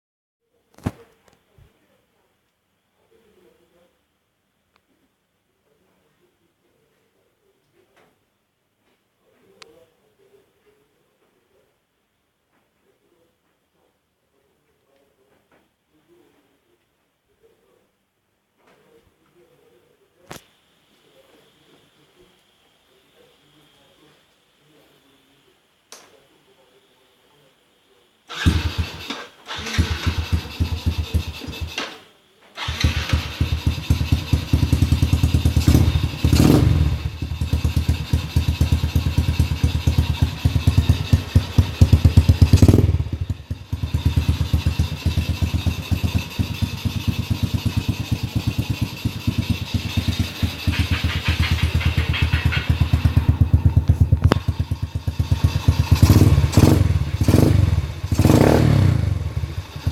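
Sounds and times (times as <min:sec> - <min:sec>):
motorcycle idling: 0:28.3 - 0:31.8, 0:32.6 - 0:59.9
motorcycle throttle blips: 0:32.6 - 0:59.9.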